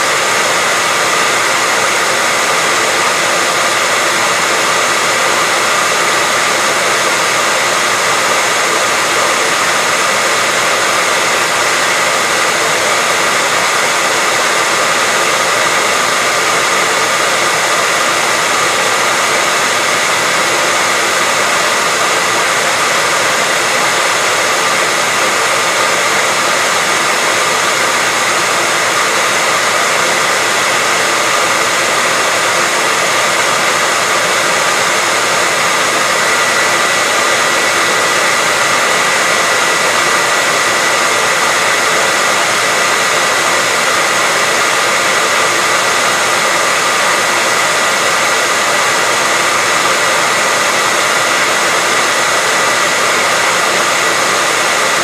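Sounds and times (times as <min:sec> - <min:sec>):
hair dryer running: 0:00.0 - 0:55.0.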